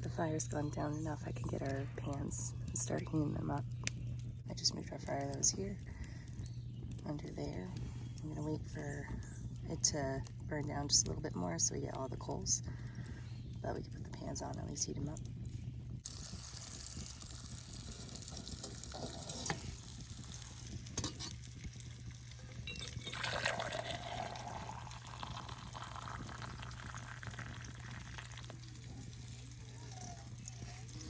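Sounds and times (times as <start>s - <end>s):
campfire hissing and crackling: 15.2s - 31.0s.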